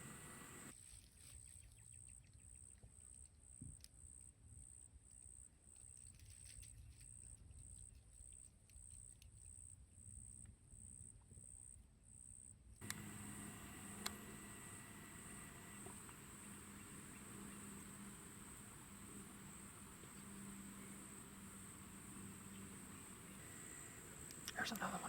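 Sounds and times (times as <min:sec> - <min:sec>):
high-pitched insect trill: 0:12.8 - 0:25.0.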